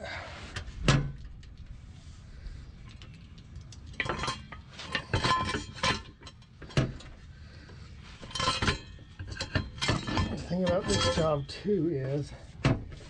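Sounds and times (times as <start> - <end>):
metal parts clinking and knocking: 2.9 - 7.1, 8.2 - 12.3.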